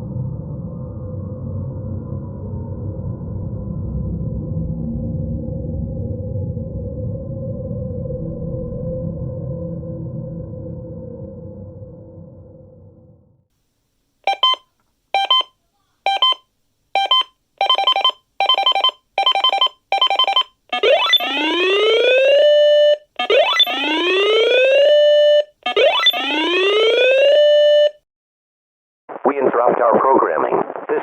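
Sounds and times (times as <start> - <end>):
electronic alarm beeps: 14.3 - 14.6, 15.2 - 15.5, 16.1 - 16.4, 17.0 - 28.0
rising alarm whoops: 20.8 - 27.9.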